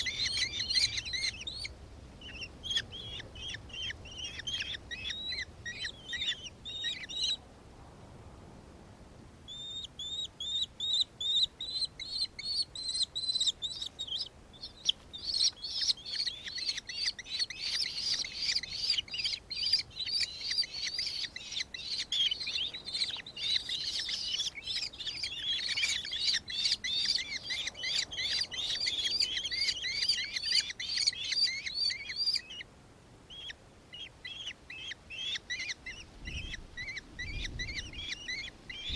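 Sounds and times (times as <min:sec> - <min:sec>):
kestrel chattering call: 0:00.0 - 0:07.4.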